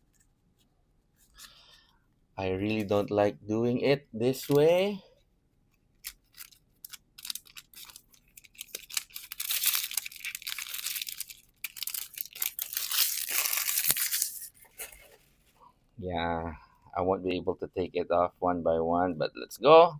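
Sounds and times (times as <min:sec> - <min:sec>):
foil wrapper crinkling and tearing: 0:06.0 - 0:15.4.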